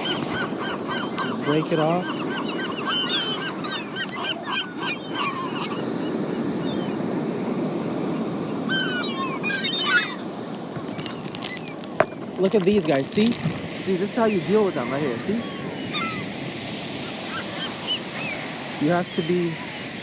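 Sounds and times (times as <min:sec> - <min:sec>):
seagulls squawking: 0:00.0 - 0:07.1, 0:08.5 - 0:20.0.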